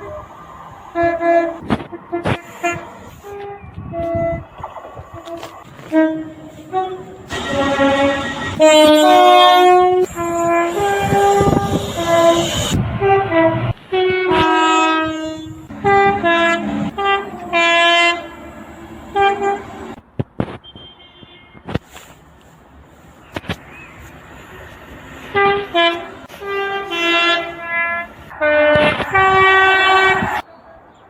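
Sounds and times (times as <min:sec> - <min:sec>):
passing train: 0:00.0 - 0:31.0
train horn blasts: 0:01.0 - 0:20.0, 0:25.2 - 0:30.4.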